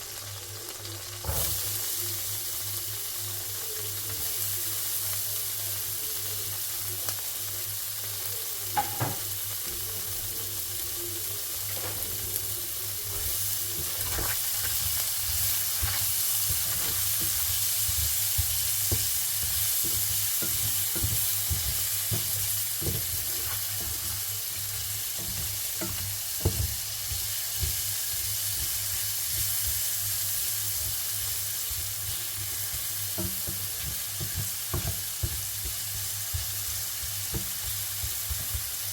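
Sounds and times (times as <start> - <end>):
food sizzling in a pan: 0.0 - 38.9
utensil knocking against pan: 8.8 - 9.2, 16.4 - 24.2, 32.7 - 38.8.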